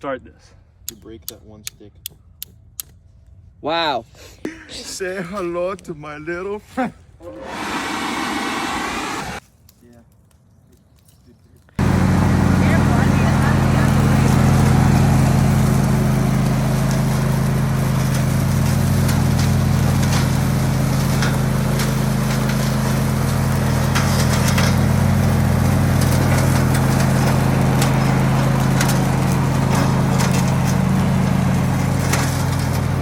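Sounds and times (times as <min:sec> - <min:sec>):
burning wood crackling: 0:05.5 - 0:33.0
engine running steadily: 0:11.8 - 0:33.0.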